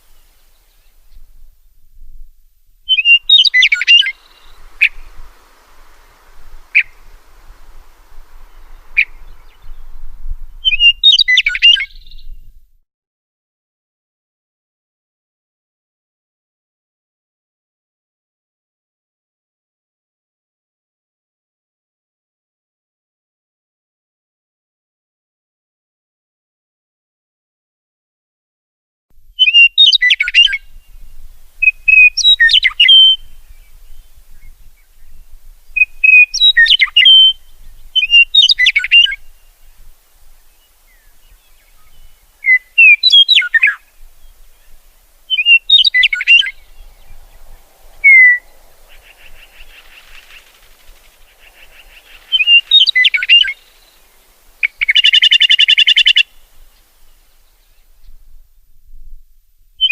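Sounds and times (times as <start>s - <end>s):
harsh buzzy bird call: 2.9s - 9.8s, 35.8s - 57.2s
songbird whistling phrases: 2.9s - 9.9s, 10.6s - 12.4s, 29.4s - 31.0s, 31.6s - 39.7s, 40.6s - 56.5s.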